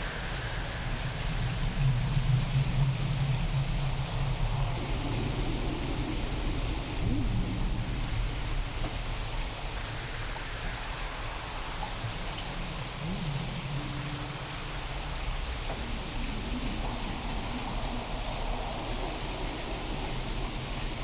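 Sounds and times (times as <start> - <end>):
steady rain falling: 0.0 - 21.0.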